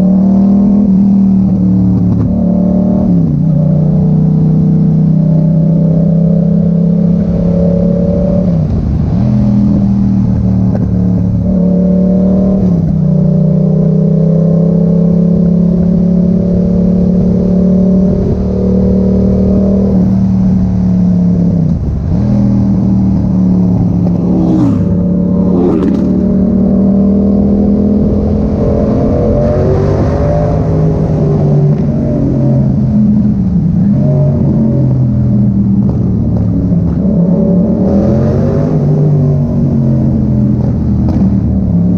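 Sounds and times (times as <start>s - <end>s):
loud motorcycle engine revving: 21.3s - 41.9s.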